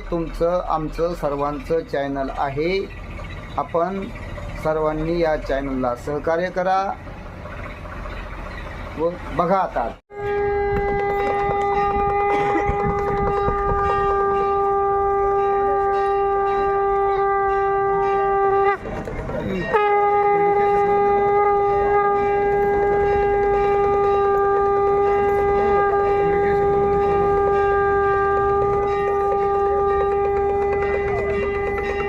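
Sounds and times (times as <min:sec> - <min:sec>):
conch shell blown: 0:10.1 - 0:19.0, 0:19.7 - 0:32.0.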